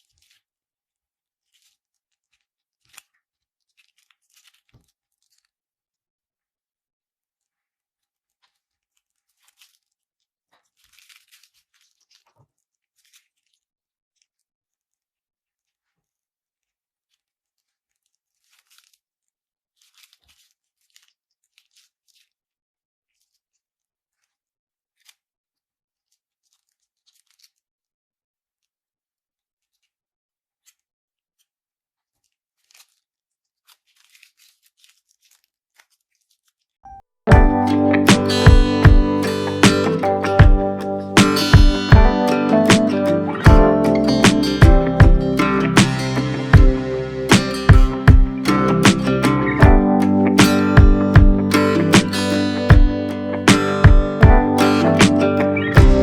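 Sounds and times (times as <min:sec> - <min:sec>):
acoustic guitar music: 0:37.3 - 0:56.0.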